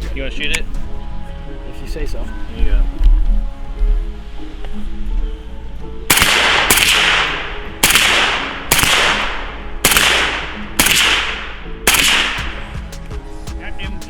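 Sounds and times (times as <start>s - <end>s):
suppressed rifle shots: 6.1s - 12.7s.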